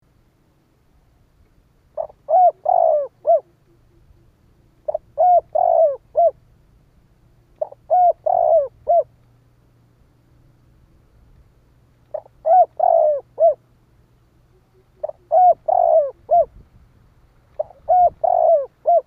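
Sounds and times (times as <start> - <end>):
dove cooing: 2.0 - 6.4, 7.5 - 9.2, 12.1 - 13.6, 14.4 - 16.6, 17.6 - 19.0.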